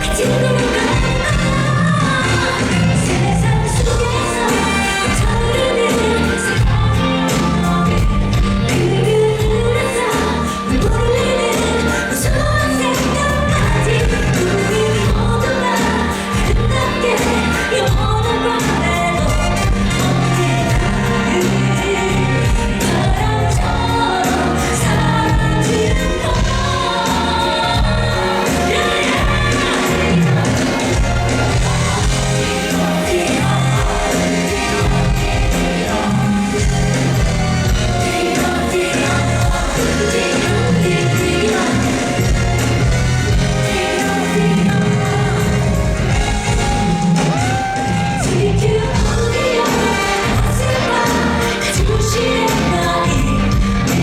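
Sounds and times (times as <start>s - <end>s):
backing band playing: 0.0s - 54.0s
woman singing: 0.0s - 54.0s
repeating bass line: 12.2s - 54.0s.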